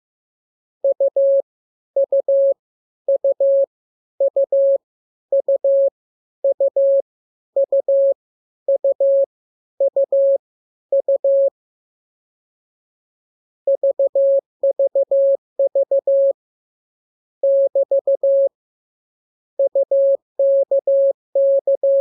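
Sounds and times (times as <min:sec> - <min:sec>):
morse code beeps: 0:00.8 - 0:01.4, 0:02.0 - 0:02.6, 0:03.2 - 0:03.7, 0:04.3 - 0:04.8, 0:05.4 - 0:07.0, 0:07.6 - 0:08.2, 0:08.8 - 0:09.3, 0:09.9 - 0:10.4, 0:11.0 - 0:11.5, 0:13.7 - 0:16.4, 0:17.4 - 0:18.5, 0:19.6 - 0:22.0.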